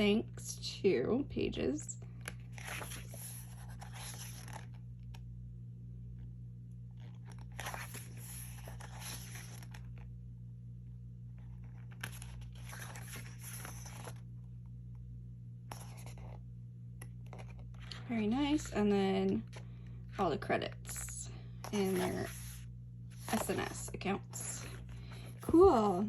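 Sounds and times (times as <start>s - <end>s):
steady low hum: 0.0s - 26.0s
paper pages rustling: 2.2s - 5.2s, 7.0s - 10.1s, 11.4s - 14.3s, 15.7s - 16.4s, 17.0s - 18.0s, 21.6s - 26.0s.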